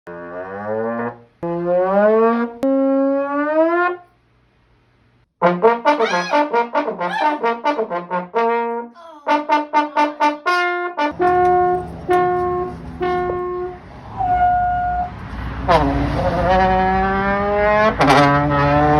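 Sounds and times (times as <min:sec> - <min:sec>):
brass notes sliding upward: 0:05.4 - 0:11.4.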